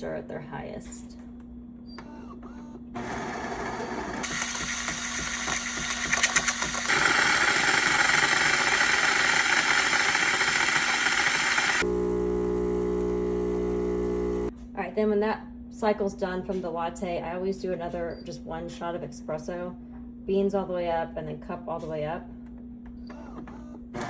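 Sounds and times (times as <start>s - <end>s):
coffee machine motors whirring: 2.0s - 14.5s.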